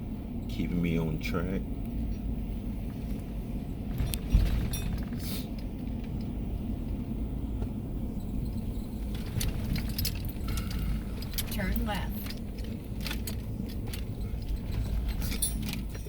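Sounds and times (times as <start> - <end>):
car road rumble: 0.0 - 16.0
car jolt: 3.9 - 6.4, 8.9 - 16.0
loose rattling and clicking: 3.9 - 6.4.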